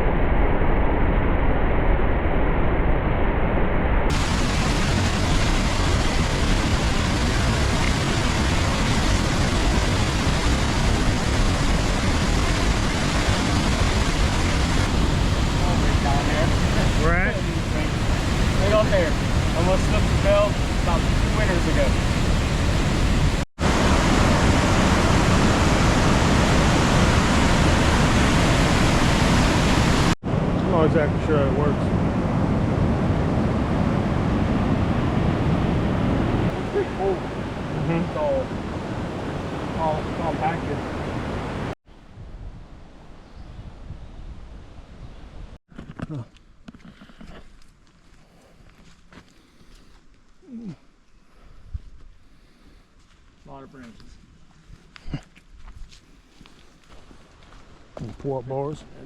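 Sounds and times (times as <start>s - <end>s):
waterfall rushing: 4.1s - 30.2s, 35.1s - 41.8s.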